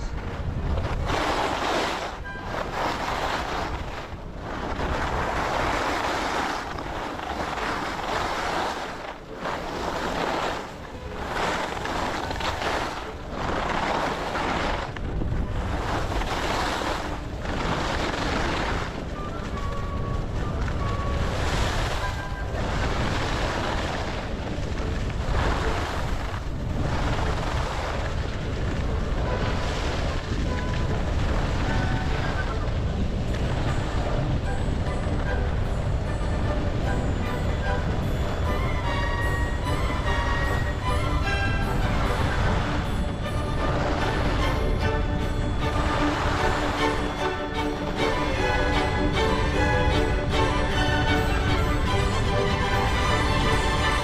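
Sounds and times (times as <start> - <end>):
skis scraping on snow: 0.0 - 54.0
wind on microphone: 0.0 - 54.0
skis hissing on snow: 1.0 - 14.9, 15.6 - 19.0.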